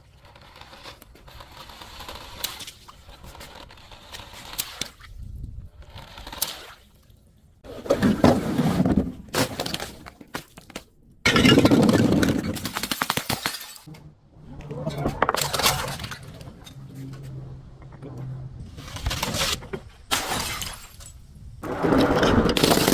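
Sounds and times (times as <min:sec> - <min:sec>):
glass bottles breaking: 0:11.3 - 0:13.9, 0:15.3 - 0:16.4, 0:20.1 - 0:21.2
glass shards crunching and clinking: 0:11.3 - 0:13.9, 0:19.0 - 0:21.3.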